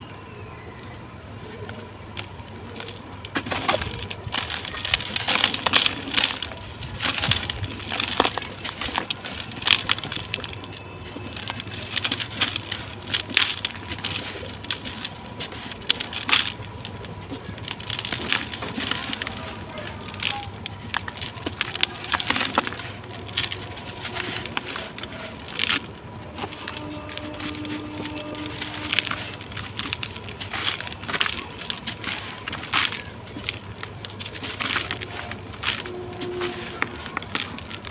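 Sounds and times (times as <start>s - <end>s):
blocks crumbling with gritty crunching: 0.0s - 37.9s.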